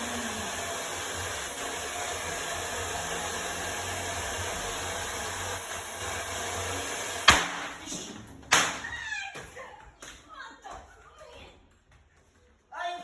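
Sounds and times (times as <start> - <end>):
hair dryer blowing: 0.0 - 8.3
loud sharp bang: 7.2 - 8.8.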